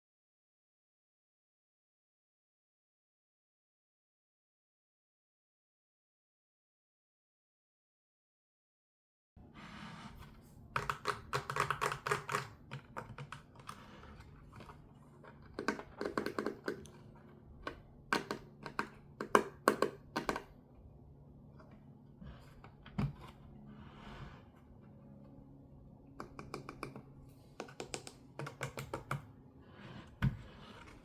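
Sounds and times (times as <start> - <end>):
plastic pieces clicking and tapping: 10.7 - 13.8, 14.4 - 17.0, 17.6 - 20.6, 27.6 - 29.3.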